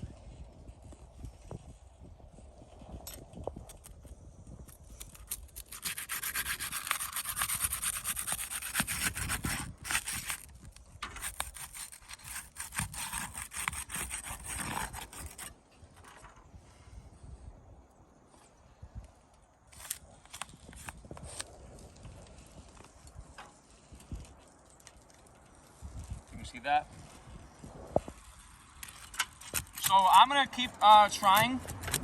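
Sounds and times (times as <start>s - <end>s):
shingles tearing: 4.9s - 15.5s, 28.7s - 32.0s
roof shingles scraping: 5.1s - 16.3s.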